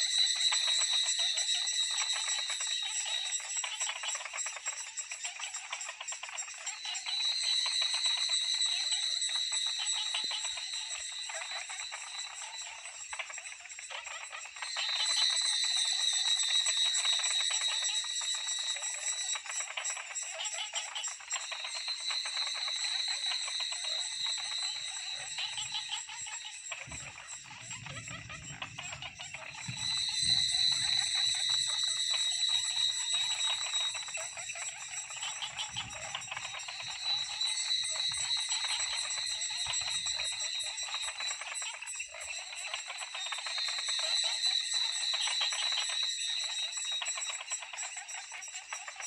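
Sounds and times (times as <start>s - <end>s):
cicadas buzzing: 0.0s - 49.0s.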